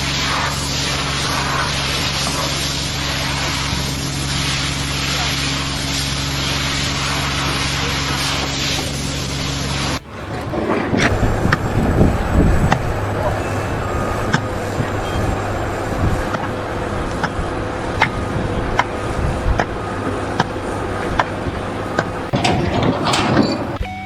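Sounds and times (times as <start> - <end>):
engine running: 0.0 - 23.9
sharp knocks and clicks: 13.6 - 23.8.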